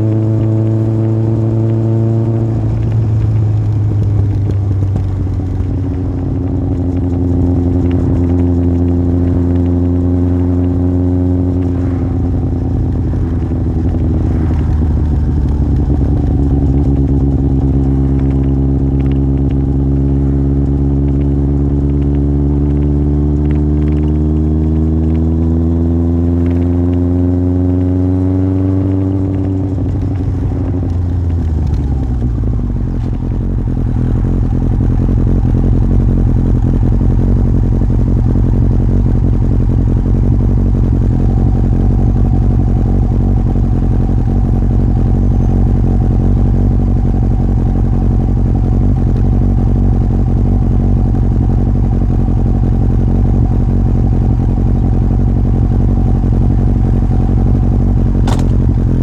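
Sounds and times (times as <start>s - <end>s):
motorcycle engine cruising: 0.0s - 59.0s.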